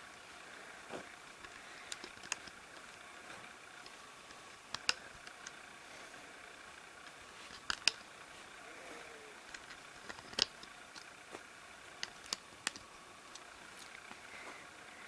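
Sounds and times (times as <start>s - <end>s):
plastic clicks and taps: 1.4s - 2.6s, 4.7s - 5.6s, 7.6s - 8.0s, 9.5s - 11.1s, 12.0s - 13.5s.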